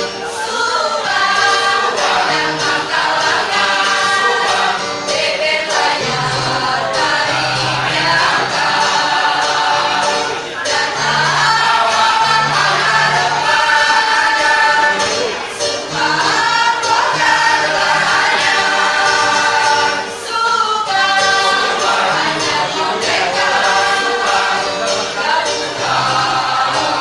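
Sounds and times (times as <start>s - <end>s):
choir singing: 0.0s - 27.0s.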